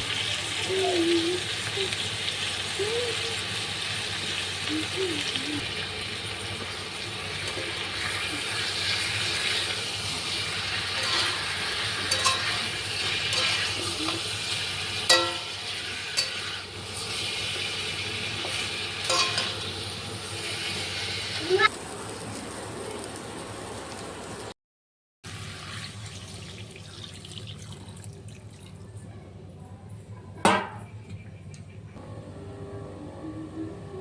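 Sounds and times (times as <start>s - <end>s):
curry sizzling in a pan: 0.0s - 24.5s
spoon knocking against pan: 15.1s - 15.6s.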